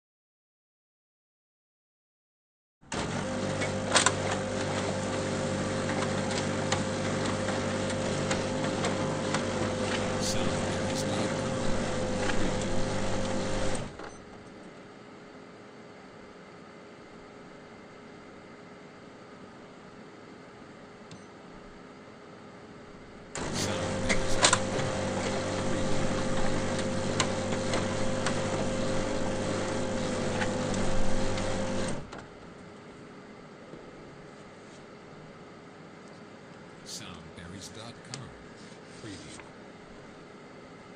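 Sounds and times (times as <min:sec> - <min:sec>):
paper feed clicks: 0:02.9 - 0:14.1, 0:23.4 - 0:32.3
photocopier motor drone: 0:02.9 - 0:14.1, 0:23.4 - 0:32.2.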